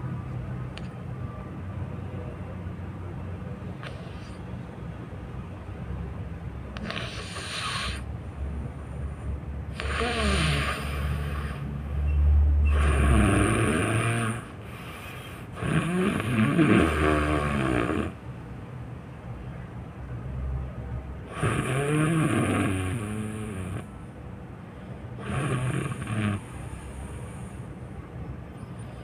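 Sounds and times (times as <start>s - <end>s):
person snoring loudly: 6.8s - 8.0s, 9.7s - 11.6s, 12.7s - 14.6s, 15.5s - 18.2s, 21.3s - 23.9s, 25.2s - 26.9s.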